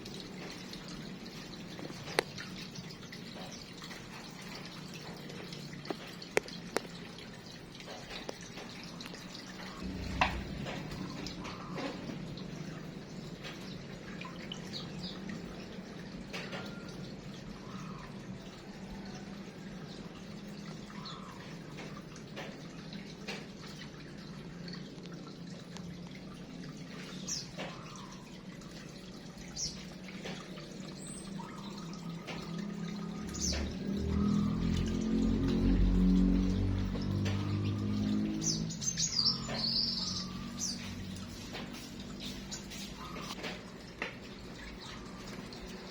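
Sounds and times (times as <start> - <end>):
water dripping and trickling: 0.0 - 45.9
small birds chirping: 37.3 - 43.4.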